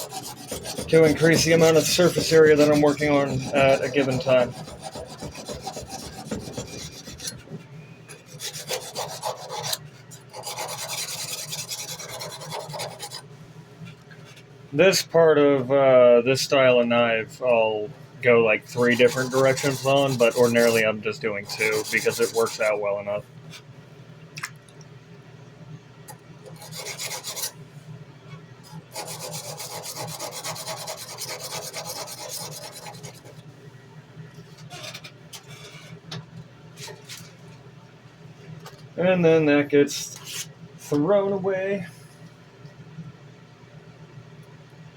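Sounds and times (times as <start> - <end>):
sandpaper rasping on knife blade: 0.0 - 7.4, 8.2 - 13.2, 18.8 - 20.8, 21.5 - 22.7, 26.6 - 27.6, 28.9 - 33.3.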